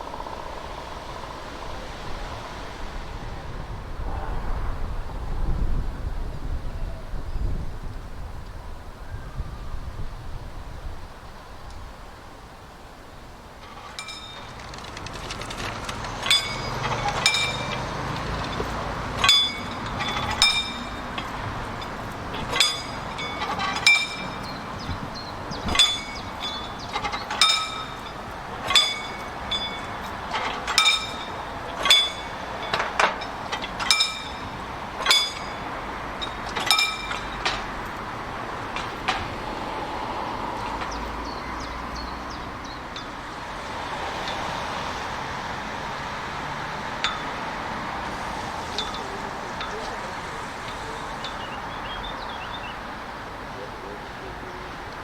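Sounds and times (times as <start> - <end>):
low rumble of train: 0.0 - 55.0
train wheels clicking over rail joint: 13.4 - 41.3, 42.9 - 52.9.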